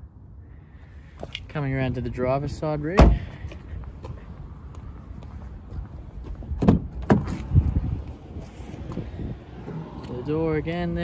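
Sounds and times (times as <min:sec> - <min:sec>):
car door thump: 0:03.0 - 0:03.3, 0:06.6 - 0:07.4.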